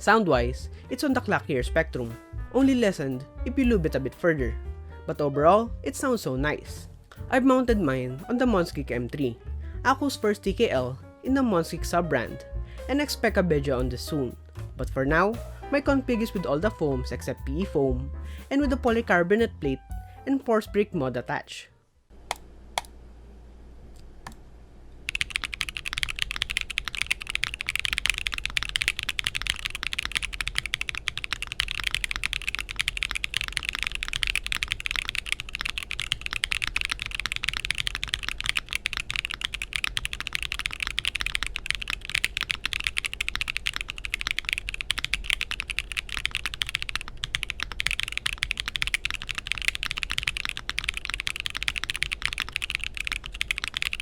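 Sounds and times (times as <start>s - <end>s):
fast mechanical keyboard typing: 25.1s - 54.0s.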